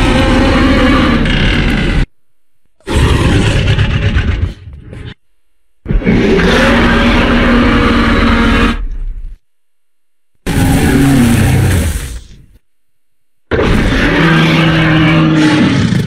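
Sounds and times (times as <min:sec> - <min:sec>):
creature growl: 0:00.0 - 0:02.1, 0:02.8 - 0:04.8, 0:05.9 - 0:08.8, 0:10.5 - 0:12.3, 0:13.5 - 0:16.0
harsh creature roar: 0:00.0 - 0:02.1, 0:02.8 - 0:04.8, 0:05.9 - 0:08.8, 0:10.5 - 0:12.4, 0:13.5 - 0:16.0.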